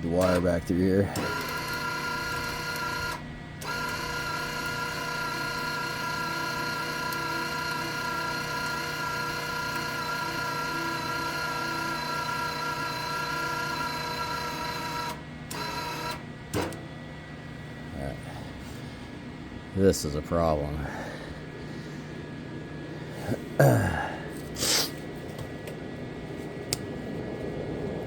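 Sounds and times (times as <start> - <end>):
welder wire-feed motor whine: 0.0 - 16.8.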